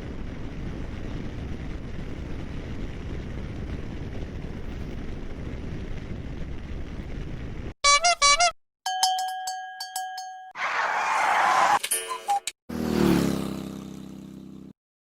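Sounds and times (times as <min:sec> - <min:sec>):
wind rush: 0:00.0 - 0:07.7
road noise: 0:10.6 - 0:11.8, 0:12.7 - 0:14.7
motorcycle engine running: 0:12.7 - 0:14.8.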